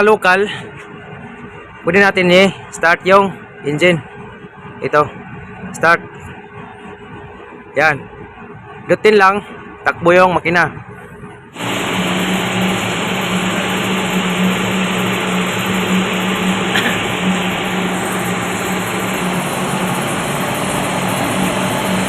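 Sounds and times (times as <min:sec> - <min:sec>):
diesel generator engine running: 0:00.0 - 0:22.0.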